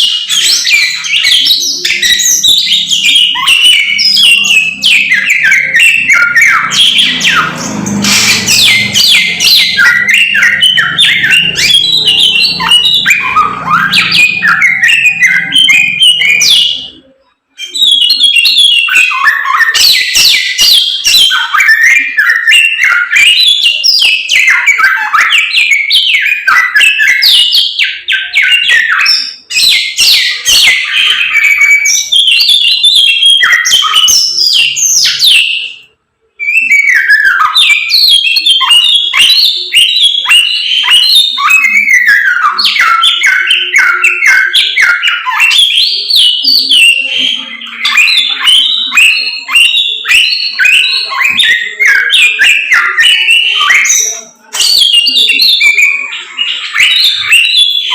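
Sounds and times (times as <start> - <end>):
caged songbird singing: 0.0 - 57.9.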